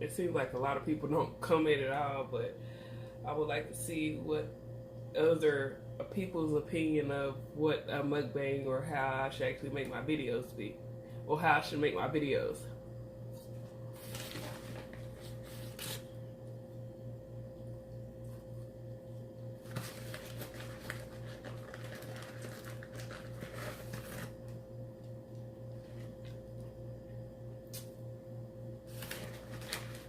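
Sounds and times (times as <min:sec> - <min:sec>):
low pulsing hum: 0:00.0 - 0:30.0
food handling: 0:19.6 - 0:24.3.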